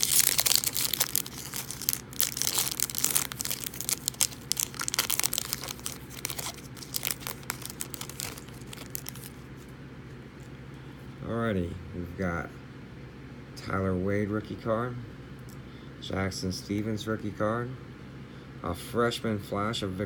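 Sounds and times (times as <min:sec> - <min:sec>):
foil wrapper crinkling and tearing: 0:00.0 - 0:09.7.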